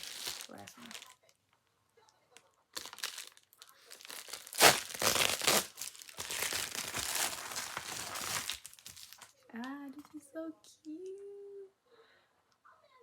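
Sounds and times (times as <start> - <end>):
packaging crinkling and tearing: 0.0 - 1.2, 2.8 - 9.3
packaging rustling: 0.0 - 1.2, 2.8 - 9.3.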